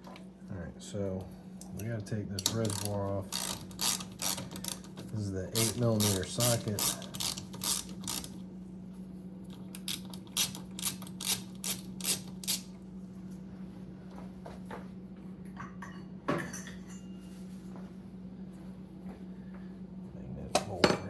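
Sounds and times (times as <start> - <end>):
steady low hum: 0.0 - 21.0
ratchet clicking on metal: 2.4 - 8.4, 9.8 - 12.7.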